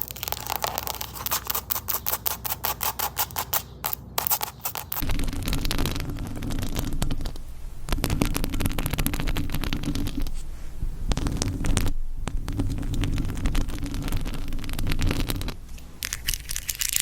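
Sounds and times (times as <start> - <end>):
fingernails scratching a surface: 0.0 - 7.4, 8.0 - 15.6
low rumble: 5.0 - 14.6.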